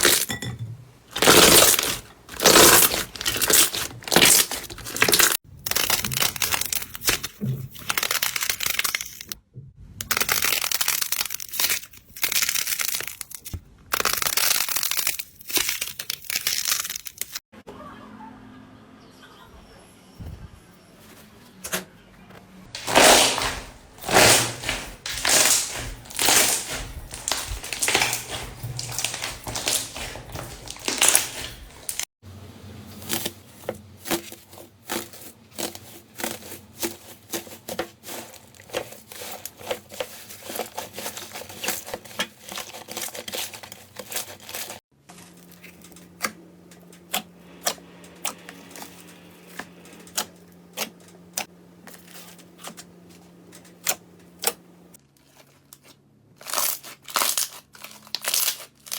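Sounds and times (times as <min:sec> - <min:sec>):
slime squishing and crackling: 0:01.1 - 0:09.4, 0:10.0 - 0:17.4, 0:22.8 - 0:32.1, 0:34.0 - 0:46.4, 0:55.2 - 0:58.9.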